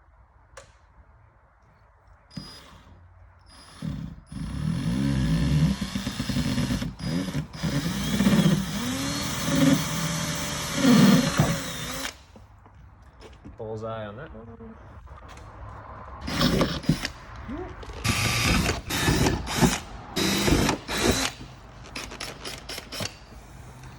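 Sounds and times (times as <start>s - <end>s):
electric drill drilling sheet metal: 3.5s - 12.2s, 16.2s - 17.2s, 18.0s - 21.4s.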